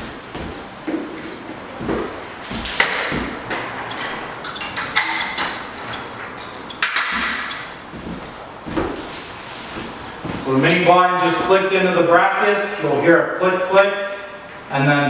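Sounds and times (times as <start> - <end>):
blind headrail snapping into brackets: 4.0 - 5.6, 6.8 - 7.6.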